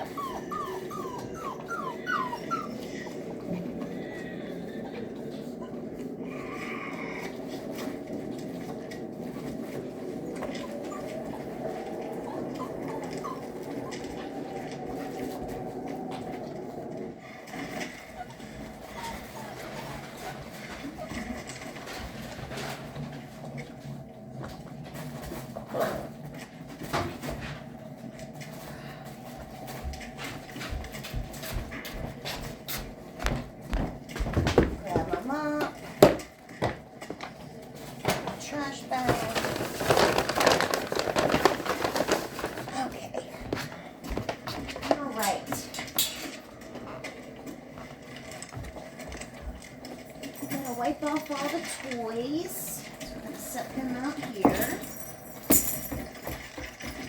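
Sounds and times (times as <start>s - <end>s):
puppy whimpering: 0.0s - 7.3s, 10.2s - 14.4s, 17.6s - 21.7s
bedding rubbing and rustling: 0.0s - 57.0s.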